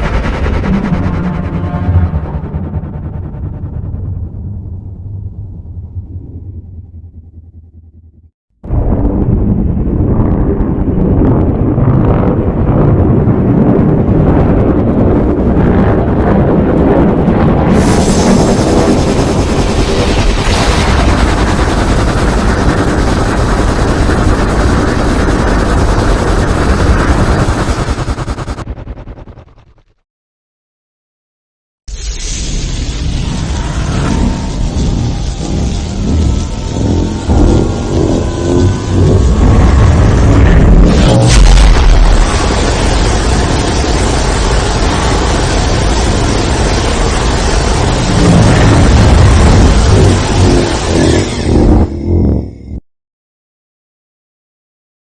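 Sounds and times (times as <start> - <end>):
loud rushing noise: 0.0 - 4.2, 32.2 - 52.2
monster rumble with rattling crackle: 8.7 - 30.0, 34.0 - 52.4.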